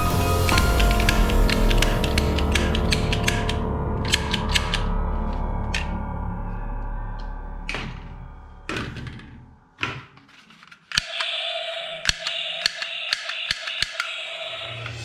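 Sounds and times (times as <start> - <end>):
sharp mechanical clicks: 0.5 - 4.9, 12.0 - 14.9.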